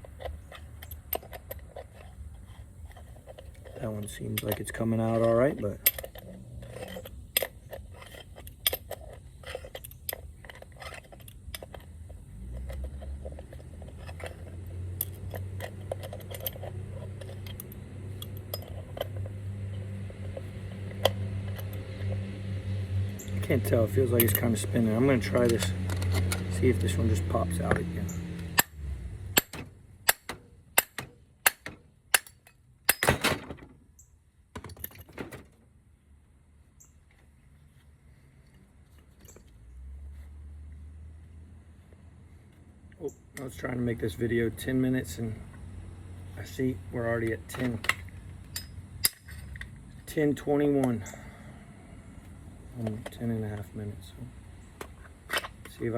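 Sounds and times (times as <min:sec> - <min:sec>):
metallic clicks of wrench and pliers: 0:03.7 - 0:11.9, 0:12.6 - 0:19.4, 0:23.2 - 0:27.8
metal pieces rattling together: 0:12.5 - 0:19.3.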